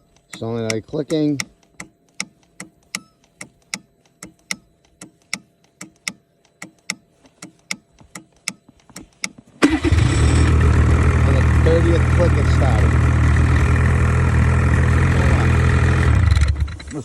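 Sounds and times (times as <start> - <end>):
starter solenoid clicking: 0.0 - 12.8
engine starting and running: 9.5 - 17.0.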